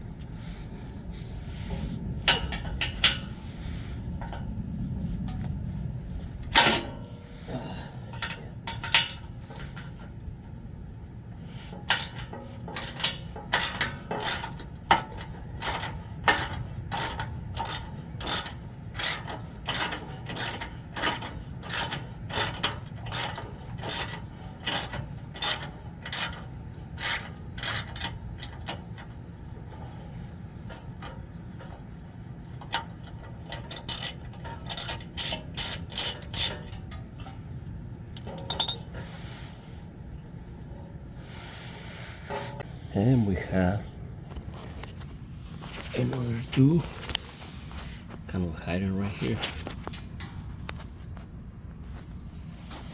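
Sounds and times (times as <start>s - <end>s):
hand ratchet clicking: 12.8s - 28.8s, 33.5s - 36.8s, 38.2s - 38.8s.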